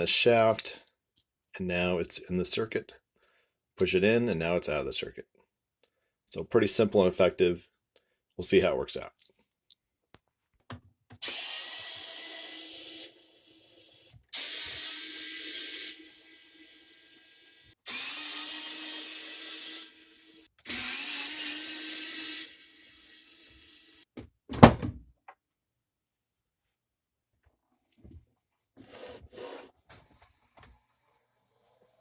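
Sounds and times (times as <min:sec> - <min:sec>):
cordless drill whirring: 0:11.2 - 0:24.0
loud thump: 0:24.5 - 0:25.0.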